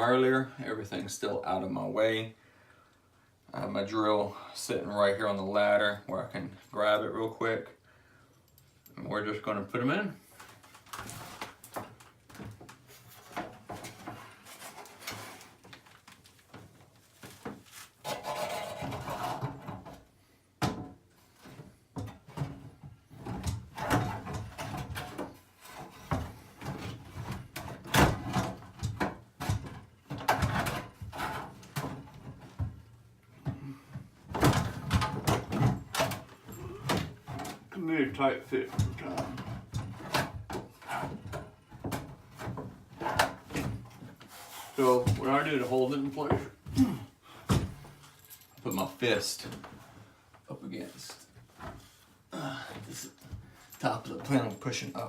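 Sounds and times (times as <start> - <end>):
cabinet scraping: 12.8 - 15.7, 17.5 - 20.0, 38.5 - 46.6.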